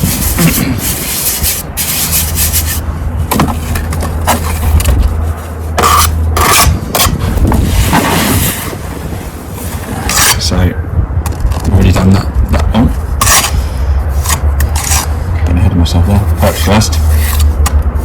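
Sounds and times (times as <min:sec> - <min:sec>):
trowel scraping mortar: 0:00.0 - 0:02.8, 0:03.4 - 0:08.8, 0:09.6 - 0:10.5, 0:13.2 - 0:15.2, 0:16.1 - 0:17.6
low steady hum: 0:00.0 - 0:18.0.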